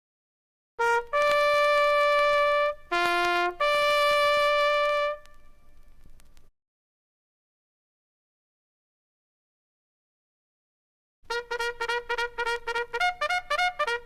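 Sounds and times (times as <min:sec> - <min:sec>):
bugle call: 0:00.8 - 0:05.6, 0:11.3 - 0:14.0.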